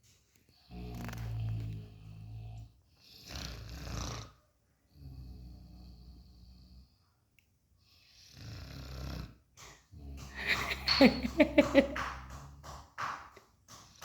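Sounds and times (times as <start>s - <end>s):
snoring with fluttering rattle: 0.5s - 7.1s, 7.9s - 10.4s
breathy snore: 0.6s - 7.0s, 8.0s - 10.6s.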